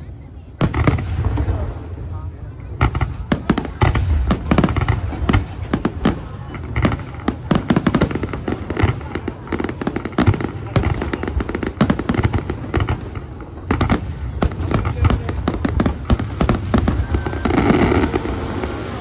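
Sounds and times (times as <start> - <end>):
fireworks bangs and crackles: 0.0 - 19.0.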